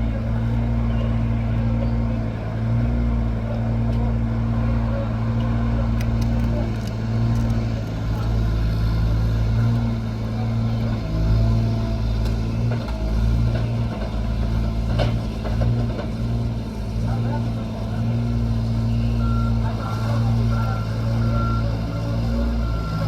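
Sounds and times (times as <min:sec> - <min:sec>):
heavy machine engine running: 0:00.0 - 0:23.0.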